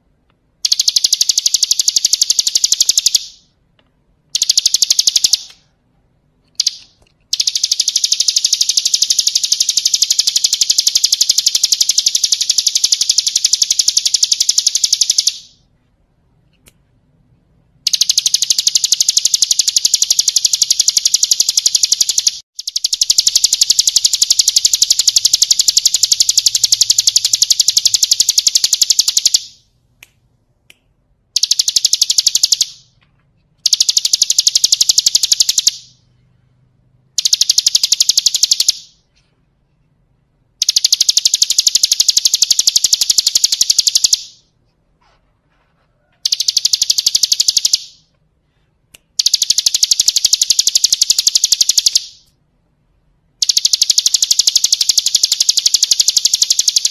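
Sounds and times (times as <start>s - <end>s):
bird singing rapid trill: 6.6s - 15.5s.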